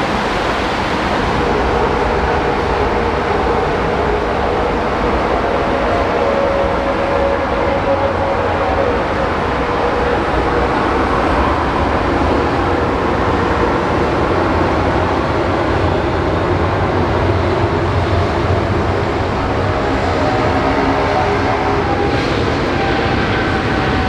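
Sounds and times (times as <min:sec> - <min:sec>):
faint steady tones: 0:00.0 - 0:24.0
jet engines rumbling: 0:00.0 - 0:24.0.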